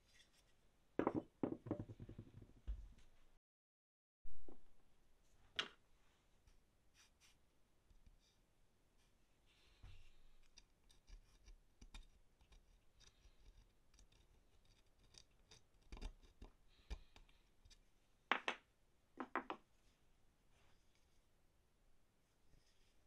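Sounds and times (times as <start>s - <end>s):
wood and metal clicks and scrapes: 10.4s - 17.8s.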